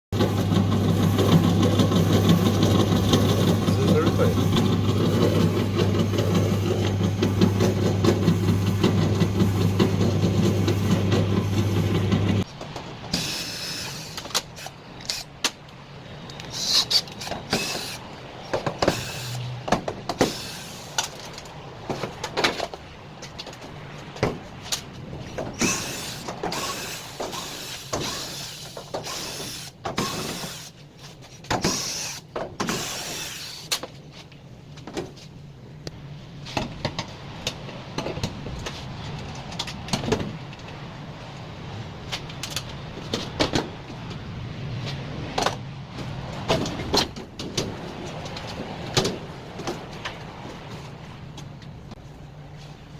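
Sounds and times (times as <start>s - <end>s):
clothes dryer humming: 0.1s - 12.5s.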